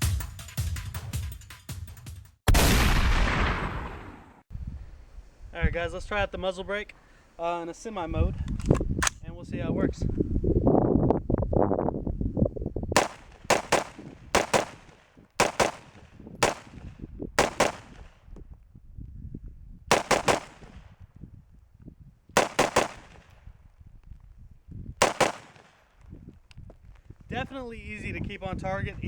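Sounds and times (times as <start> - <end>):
rifle shots: 2.5 - 4.4, 13.0 - 18.2, 19.9 - 20.9, 22.4 - 23.3, 25.0 - 25.8.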